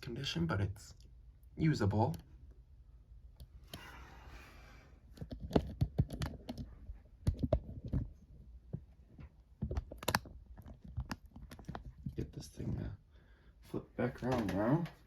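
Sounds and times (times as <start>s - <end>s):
plastic fan clicks and knocks: 5.2s - 12.9s.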